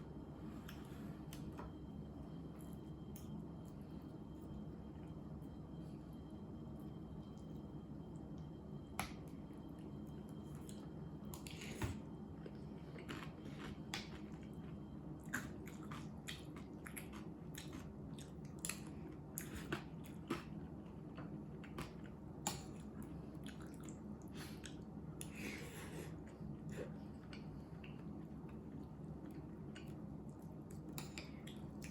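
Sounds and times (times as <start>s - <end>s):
steady low hum: 0.0s - 31.9s
person chewing: 13.0s - 14.4s.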